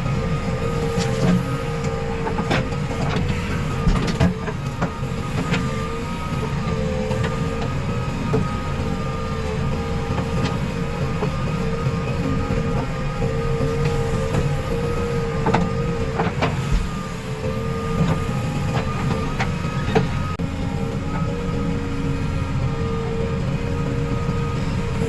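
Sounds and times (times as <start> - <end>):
diesel machinery whine and rumble: 0.0 - 25.0.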